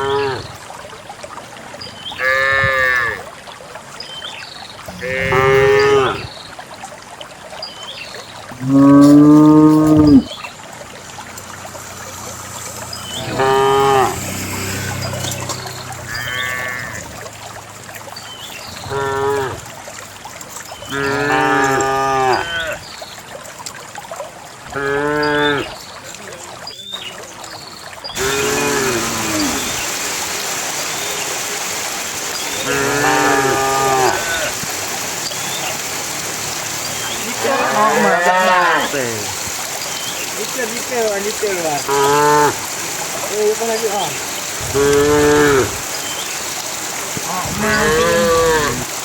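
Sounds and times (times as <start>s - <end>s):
cattle mooing: 2.2s - 3.2s, 4.9s - 6.3s, 8.6s - 10.3s, 13.2s - 17.1s, 32.6s - 34.5s, 37.4s - 39.2s, 41.9s - 42.6s, 44.7s - 45.8s, 47.3s - 48.9s.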